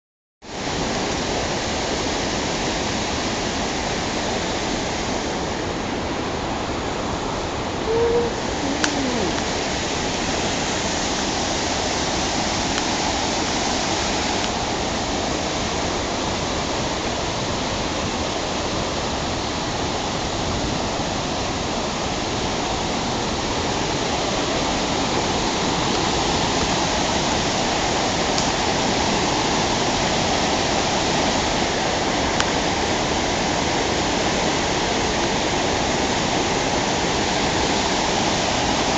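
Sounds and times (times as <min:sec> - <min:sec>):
waterfall rushing: 0:00.6 - 0:38.9.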